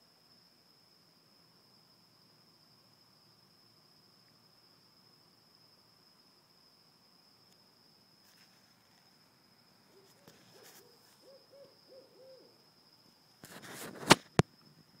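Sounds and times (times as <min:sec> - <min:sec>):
rustling: 0:09.9 - 0:11.2, 0:13.4 - 0:14.4
owl hooting: 0:09.9 - 0:12.6
sharp loud clicks: 0:13.7 - 0:14.5.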